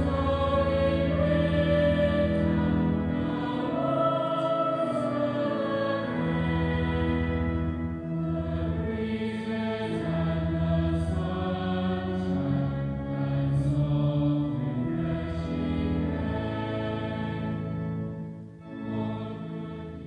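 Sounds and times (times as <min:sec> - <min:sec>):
low sustained bass: 0:00.0 - 0:14.2
choir singing long chords: 0:00.0 - 0:20.0.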